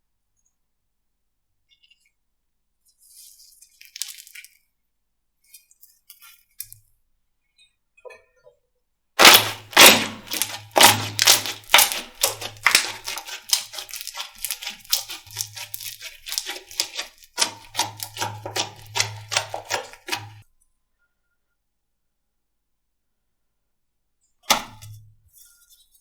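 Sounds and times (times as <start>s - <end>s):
slime crackling and popping: 9.2s - 20.4s.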